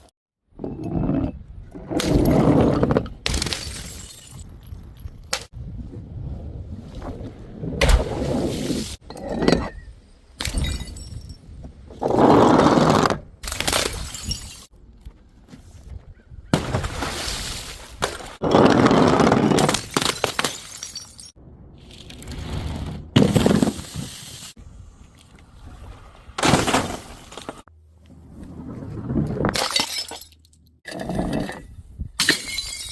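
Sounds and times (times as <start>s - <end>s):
glass bottles smashing: 3.3s - 4.6s, 10.4s - 11.4s, 13.6s - 14.7s, 19.6s - 21.4s, 29.6s - 30.5s, 32.2s - 32.9s.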